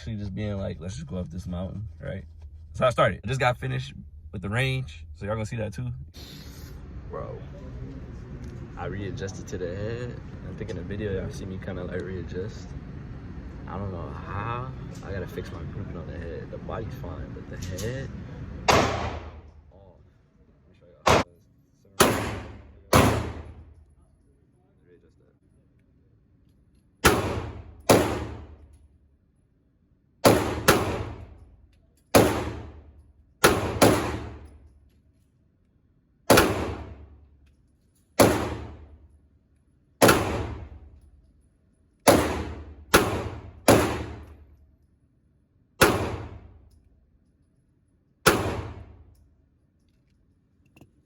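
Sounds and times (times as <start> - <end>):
gunshots with echo: 18.7 - 19.5, 21.1 - 21.3, 22.0 - 23.7, 27.0 - 28.6, 30.2 - 31.4, 32.2 - 34.6, 36.3 - 37.1, 38.2 - 39.0, 40.0 - 40.9, 42.1 - 44.4, 45.8 - 46.6, 48.3 - 49.0.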